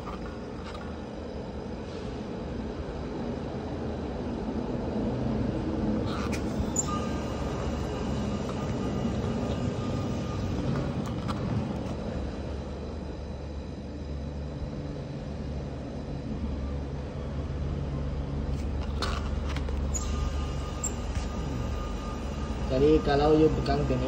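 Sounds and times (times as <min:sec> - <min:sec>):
refrigerator compressor humming: 0:05.0 - 0:24.0.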